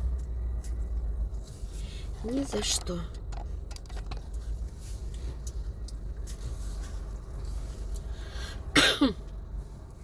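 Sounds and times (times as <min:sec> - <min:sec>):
road and engine rumble in car: 0:00.0 - 0:10.0.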